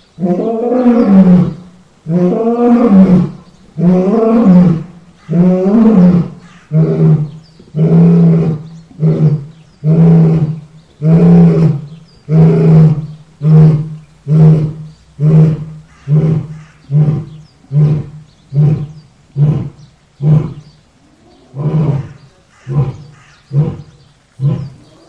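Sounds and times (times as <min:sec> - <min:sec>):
lion roaring: 0:00.2 - 0:25.0.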